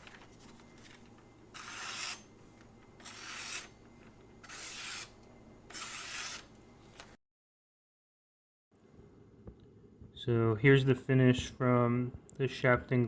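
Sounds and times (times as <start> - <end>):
knife rasping across paper: 1.6 - 2.3, 3.0 - 3.8, 4.4 - 6.5.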